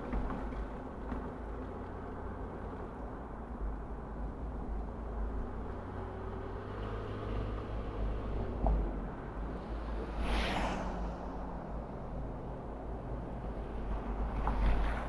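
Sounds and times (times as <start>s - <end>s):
tyres and wind rumble: 0.0s - 15.0s
rushing whoosh: 9.6s - 12.2s.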